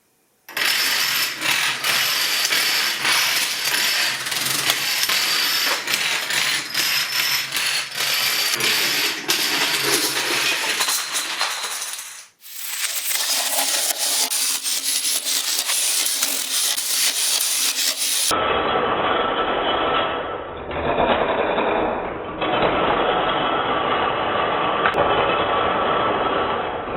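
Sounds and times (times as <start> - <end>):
dominoes toppling clatter: 0.5 - 18.3.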